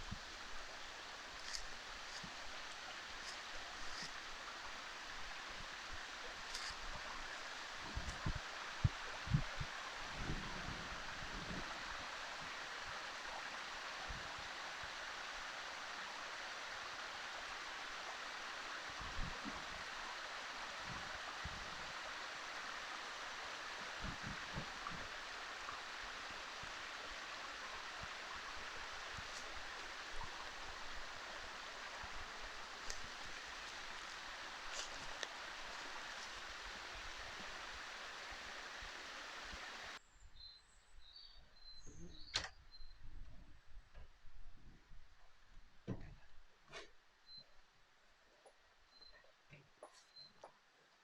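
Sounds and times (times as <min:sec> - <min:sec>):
running water rushing: 0:00.0 - 0:40.0.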